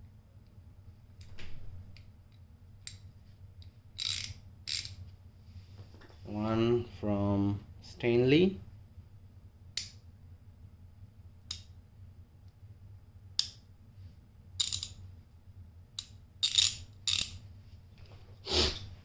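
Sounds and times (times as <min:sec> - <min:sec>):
metal ratchet clinks and clicks: 0:04.0 - 0:05.0, 0:14.6 - 0:15.0, 0:16.0 - 0:17.4.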